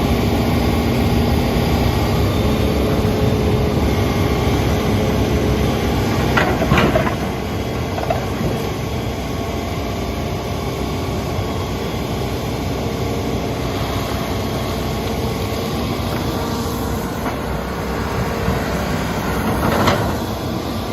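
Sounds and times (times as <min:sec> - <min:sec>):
excavator running: 0:00.0 - 0:20.9.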